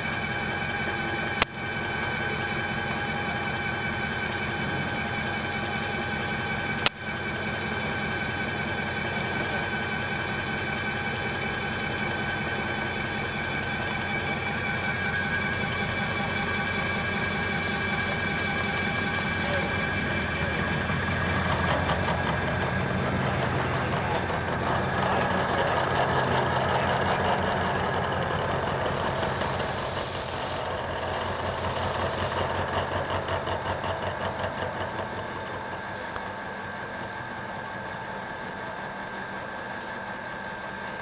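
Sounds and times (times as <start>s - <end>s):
milling machine hum: 0.0s - 41.0s
fast pulsing from cutting: 11.7s - 34.0s.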